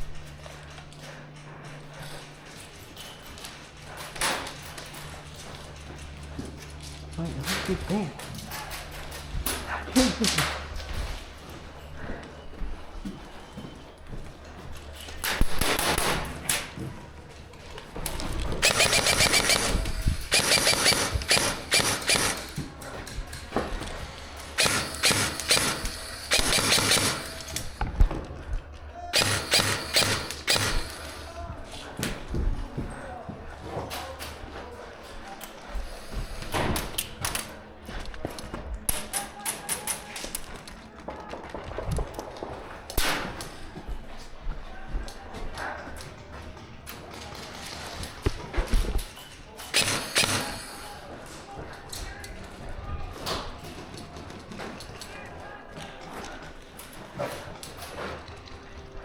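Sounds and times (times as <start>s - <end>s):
airsoft guns firing bursts: 15.3s - 16.4s, 18.6s - 22.7s, 24.4s - 27.8s, 29.1s - 31.3s, 49.7s - 50.9s
airsoft guns snapping: 29.2s - 31.3s.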